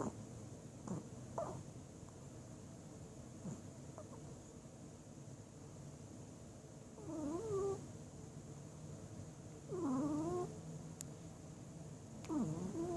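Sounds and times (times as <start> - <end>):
pet snoring: 0.8 - 1.6, 3.4 - 4.2, 7.0 - 7.8, 9.7 - 10.5, 12.2 - 12.9.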